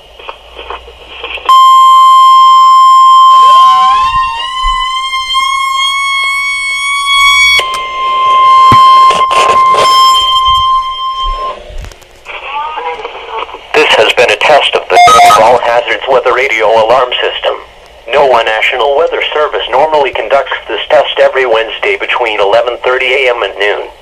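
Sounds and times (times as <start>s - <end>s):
distorted alarm beep: 1.5s - 11.7s
second alarm tone: 1.5s - 11.8s.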